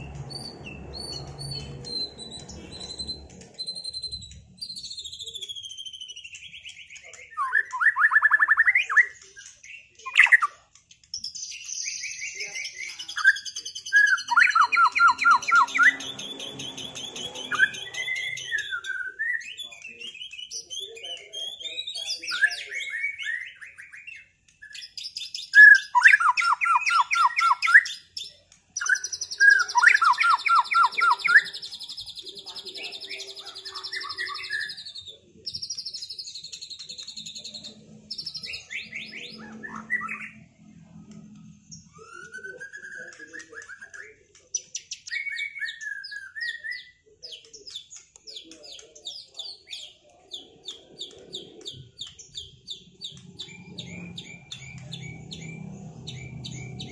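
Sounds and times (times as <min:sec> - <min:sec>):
bird song with whistles and trills: 0:00.0 - 0:40.5, 0:41.7 - 0:56.9.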